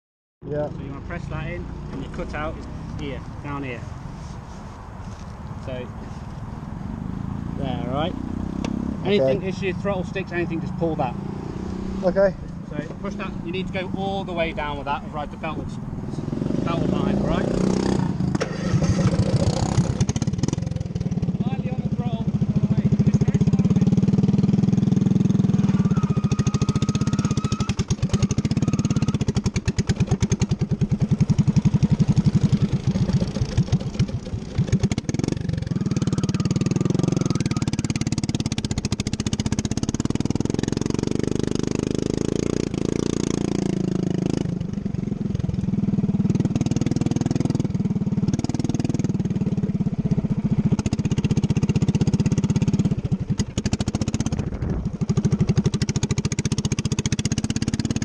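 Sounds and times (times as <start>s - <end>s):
lawn mower engine running: 17.5s - 21.4s, 22.2s - 58.0s.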